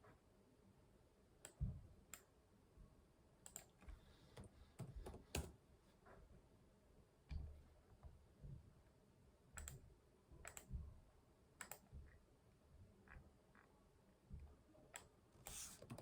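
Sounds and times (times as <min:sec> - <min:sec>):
keyboard and mouse clicks: 0:03.4 - 0:05.6, 0:09.6 - 0:09.8, 0:10.4 - 0:10.8, 0:11.6 - 0:11.9, 0:15.0 - 0:16.0.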